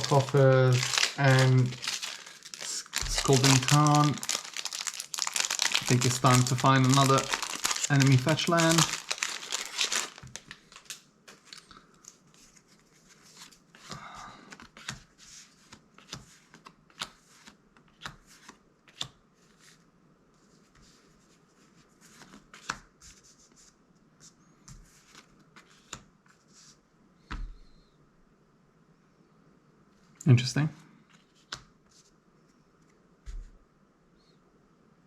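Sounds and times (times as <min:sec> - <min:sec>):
cards being leafed through: 0:00.0 - 0:11.7.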